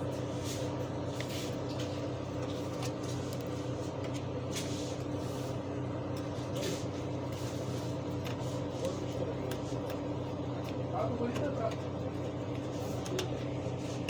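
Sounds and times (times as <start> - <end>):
machine hum: 0.0 - 14.0.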